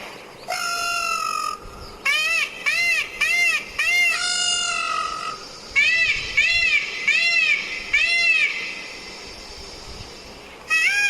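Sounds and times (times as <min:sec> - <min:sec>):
peacock wailing calls: 0:00.5 - 0:08.9, 0:10.7 - 0:11.0.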